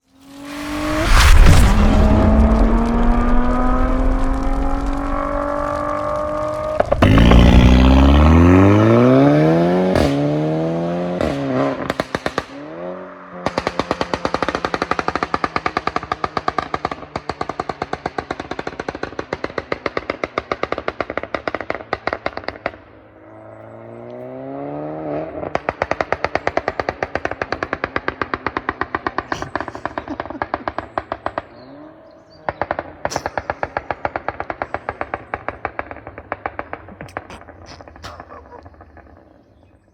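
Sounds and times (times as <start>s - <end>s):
car engine revving: 0.2s - 16.8s
exhaust crackles and pops: 0.3s - 12.7s, 13.4s - 24.2s, 25.4s - 31.8s, 32.4s - 39.9s.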